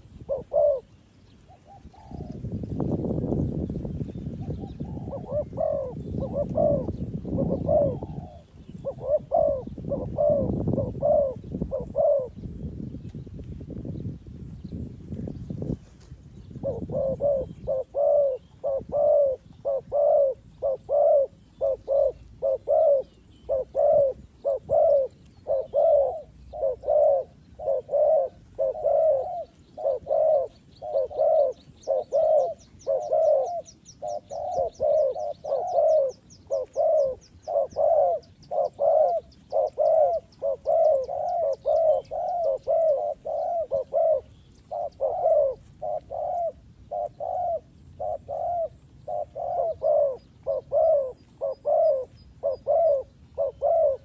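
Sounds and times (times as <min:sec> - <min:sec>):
doves cooing: 0:00.0 - 0:12.9, 0:14.0 - 0:54.0.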